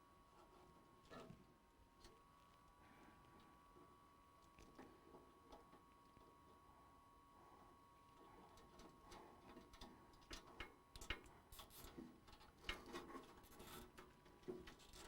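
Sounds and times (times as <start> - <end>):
faint clicks and rustling: 8.0 - 15.0.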